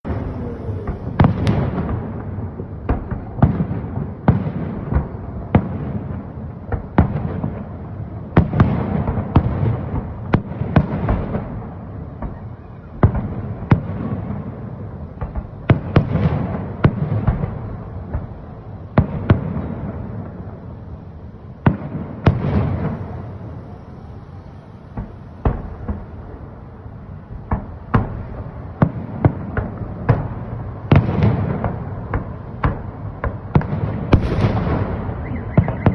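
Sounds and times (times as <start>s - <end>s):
firework shells bursting: 29.2s - 35.9s.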